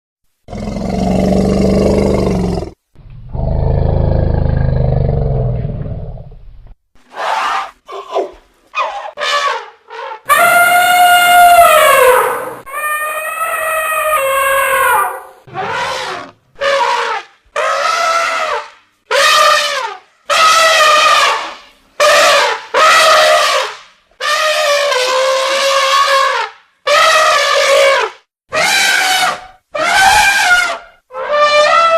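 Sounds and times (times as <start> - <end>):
low creature roar: 0.5 - 6.1
elephant trumpeting: 8.8 - 31.9.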